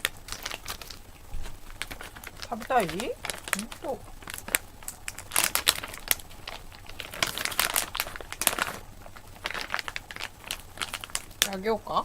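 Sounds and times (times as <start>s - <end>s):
packaging crinkling and rustling: 0.0s - 11.8s.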